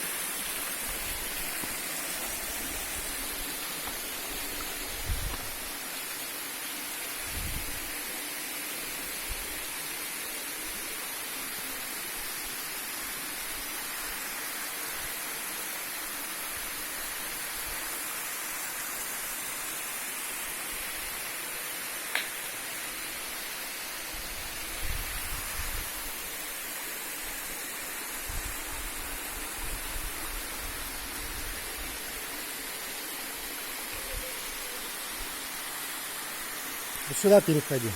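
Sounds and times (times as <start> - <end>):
waterfall rushing: 0.0 - 24.7, 25.9 - 37.9
sharp click: 22.1 - 22.4.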